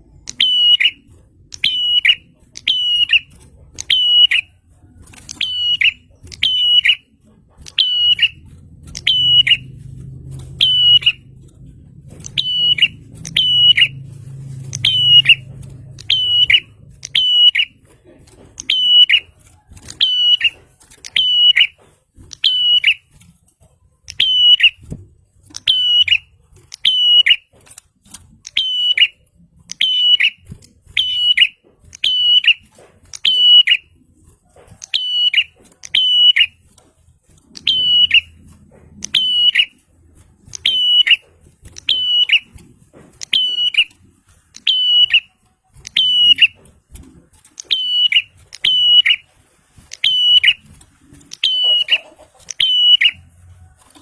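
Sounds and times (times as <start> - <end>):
bird calling shrill notes: 0.3 - 4.6, 5.3 - 11.3, 12.2 - 17.8, 18.6 - 23.2, 24.1 - 24.9, 25.6 - 27.5, 28.4 - 33.9, 34.8 - 36.6, 37.6 - 38.4, 39.0 - 39.8, 40.5 - 42.5, 43.2 - 43.9, 44.6 - 46.6, 47.6 - 49.3, 49.9 - 50.7, 51.3 - 53.3.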